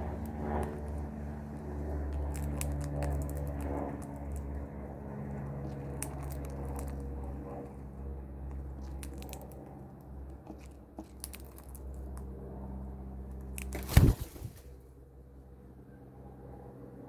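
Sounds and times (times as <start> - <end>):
parrot crunching food: 0.0 - 14.0
low hum: 0.0 - 17.0.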